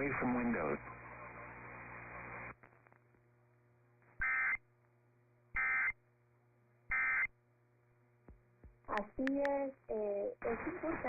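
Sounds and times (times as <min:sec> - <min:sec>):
noisy broadcast audio: 0:00.0 - 0:04.6, 0:08.3 - 0:11.0.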